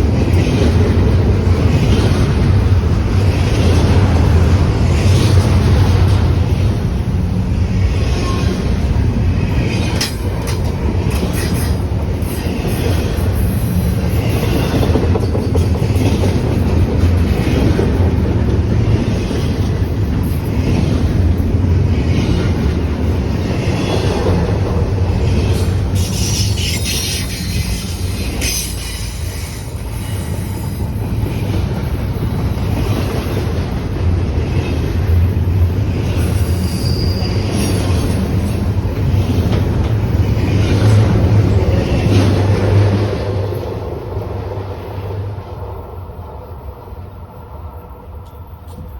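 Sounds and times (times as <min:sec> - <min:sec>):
freight train rumbling past: 0:00.0 - 0:48.9
wheels clicking over rail joints: 0:09.6 - 0:13.4
high-pitched wheel squeal: 0:36.4 - 0:38.0.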